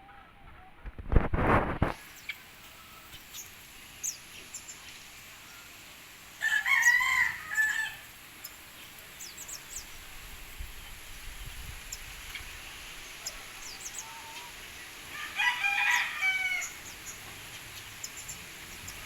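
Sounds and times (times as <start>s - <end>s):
rooster crowing: 6.4s - 8.2s, 15.1s - 16.8s.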